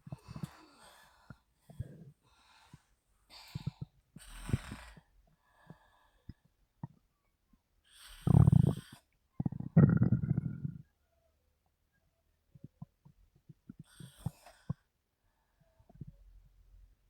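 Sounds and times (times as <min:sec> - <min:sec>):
woman snoring: 0:03.6 - 0:05.1, 0:08.0 - 0:09.0.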